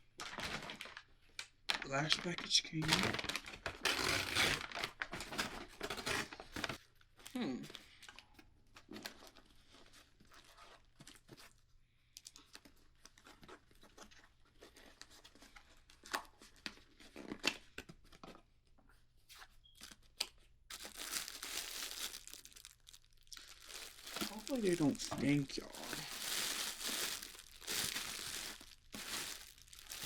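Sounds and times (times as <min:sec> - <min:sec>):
packaging crinkling: 0:00.2 - 0:06.9, 0:19.8 - 0:30.0
packaging tearing: 0:01.7 - 0:06.8, 0:20.7 - 0:30.0.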